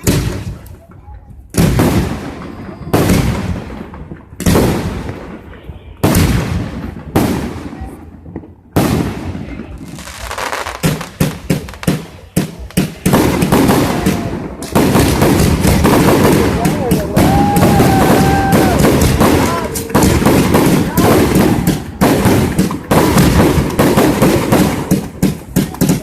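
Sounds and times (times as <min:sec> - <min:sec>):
crackling firework bangs: 0:00.0 - 0:26.0
firework booms: 0:00.0 - 0:26.0.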